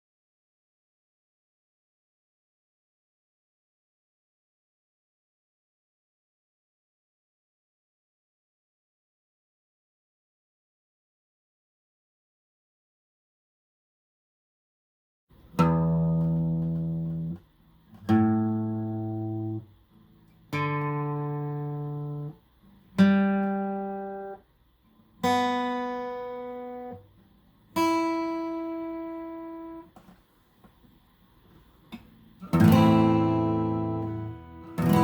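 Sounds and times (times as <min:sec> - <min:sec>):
acoustic guitar strings plucked: 0:15.4 - 0:19.7, 0:31.9 - 0:35.0
guitar chord strummed: 0:15.6 - 0:17.4, 0:18.0 - 0:19.7, 0:20.5 - 0:22.4, 0:23.0 - 0:24.4, 0:25.2 - 0:27.1, 0:27.8 - 0:29.9, 0:32.4 - 0:35.0.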